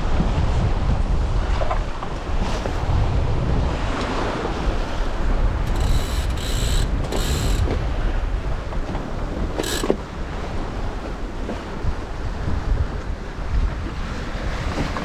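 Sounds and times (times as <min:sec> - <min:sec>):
wind: 0:00.0 - 0:15.0
sea noise: 0:01.8 - 0:15.0
self-steering gear squeaking: 0:04.8 - 0:11.7.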